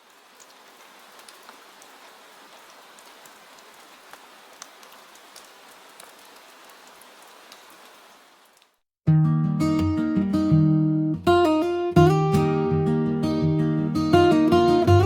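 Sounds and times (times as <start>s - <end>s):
soft steady rain: 0.0s - 8.9s, 12.0s - 15.0s
acoustic guitar music: 9.1s - 15.0s.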